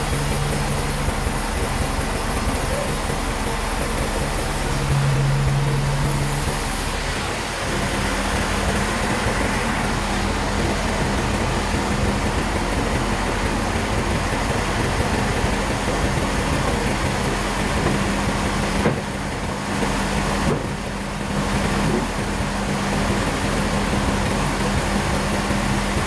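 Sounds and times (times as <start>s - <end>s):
sawmill machinery running: 0.0s - 26.0s.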